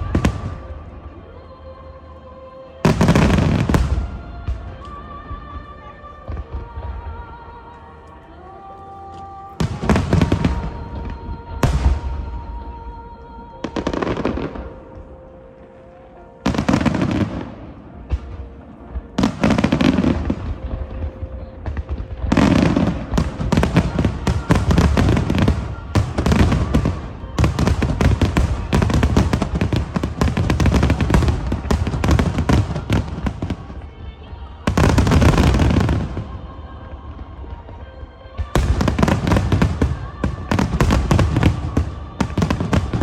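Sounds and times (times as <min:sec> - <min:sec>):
rapid fireworks bangs and crackles: 0:00.0 - 0:00.9, 0:02.8 - 0:07.5, 0:09.6 - 0:12.9, 0:16.4 - 0:43.0
fireworks bursting with deep booms: 0:09.6 - 0:13.0, 0:16.4 - 0:43.0.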